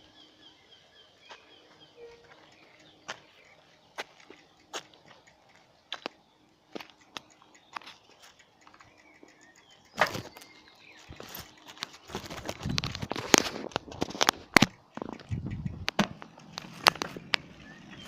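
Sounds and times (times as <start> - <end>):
sharp clicks: 2.1 - 18.0
birds' wings flapping: 10.0 - 10.5, 11.1 - 18.0.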